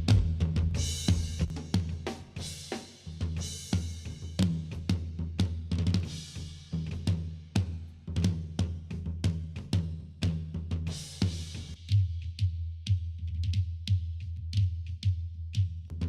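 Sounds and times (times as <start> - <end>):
drum kit playing groove: 0.0 - 11.8.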